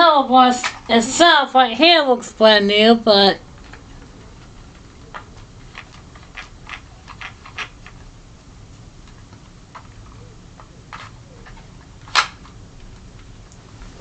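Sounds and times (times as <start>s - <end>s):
plastic parts clicking: 3.6s - 8.0s.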